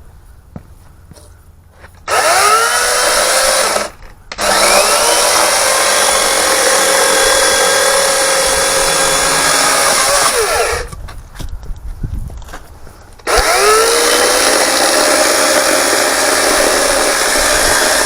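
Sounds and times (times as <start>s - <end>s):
electric chainsaw motor whining: 2.1s - 11.0s, 13.2s - 18.0s.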